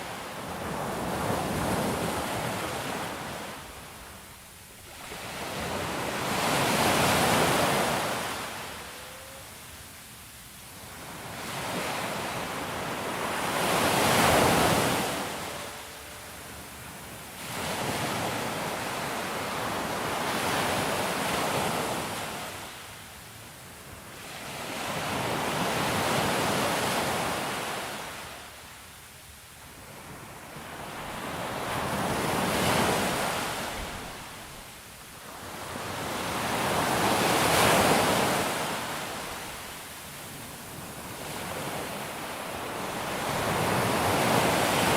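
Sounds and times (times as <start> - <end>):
ocean waves breaking: 10.9 - 22.6.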